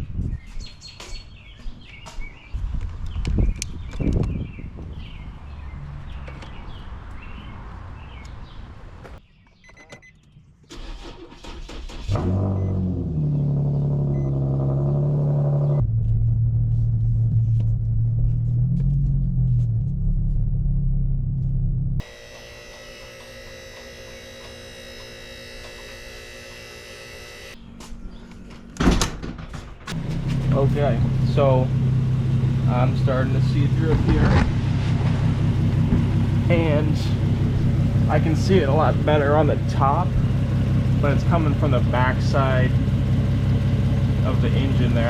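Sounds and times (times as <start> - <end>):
car engine starting and idling: 10.7 - 22.8, 29.9 - 45.0.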